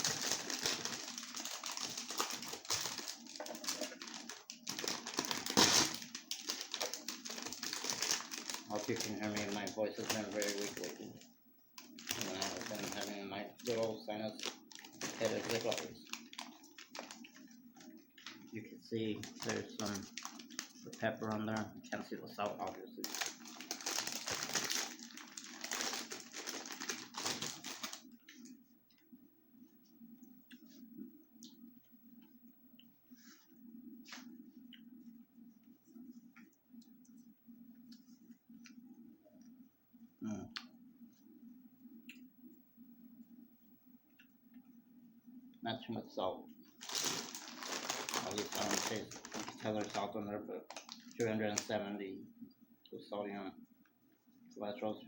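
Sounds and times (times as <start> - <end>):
crunching and chewing: 50.7 - 51.3.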